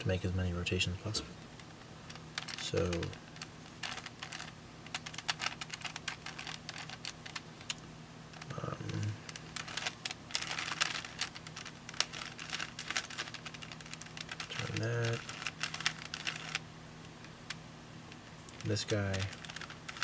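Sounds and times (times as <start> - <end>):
plastic puzzle clicking: 8.4 - 16.6, 18.5 - 20.0.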